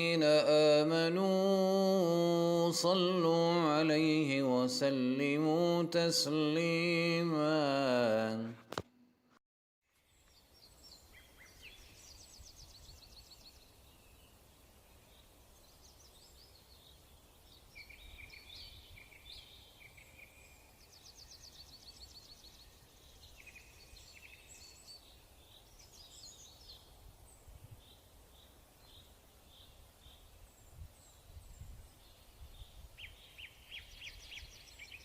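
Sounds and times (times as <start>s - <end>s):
songbirds chirping and trilling: 10.0s - 35.0s.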